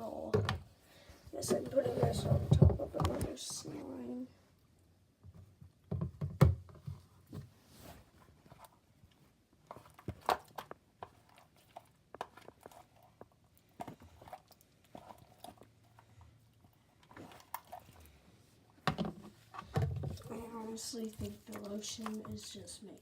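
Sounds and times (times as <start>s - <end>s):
slime squelching: 9.6s - 18.7s, 20.2s - 23.0s.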